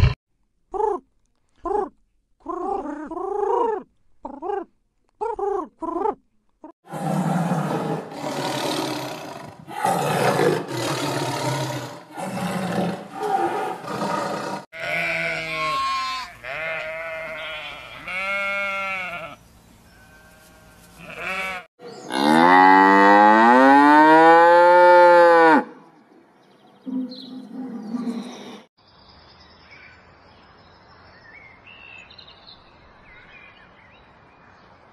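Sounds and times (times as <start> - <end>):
cattle mooing: 21.1 - 25.7.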